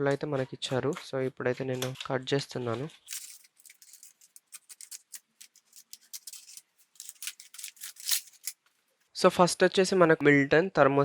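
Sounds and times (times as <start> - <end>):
packaging being cut open: 3.1 - 8.5.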